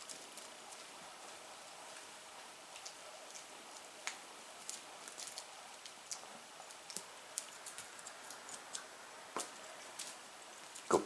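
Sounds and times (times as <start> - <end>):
steady low hiss: 0.0 - 11.0.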